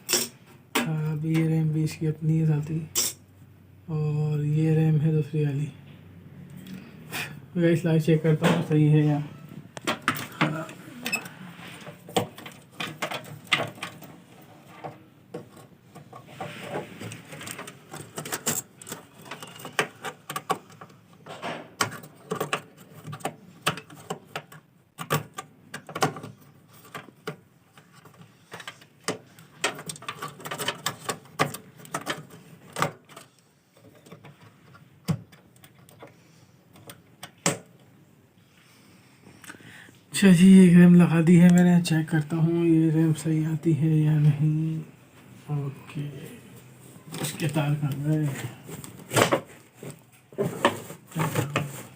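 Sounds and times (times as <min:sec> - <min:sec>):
hands handling computer parts: 0:08.3 - 0:37.9, 0:46.2 - 0:51.9.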